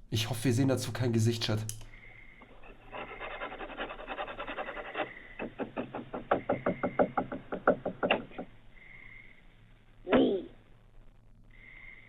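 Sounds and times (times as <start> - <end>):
scratching and rubbing at door: 2.6 - 8.5
rapid knocking on door: 5.4 - 8.5.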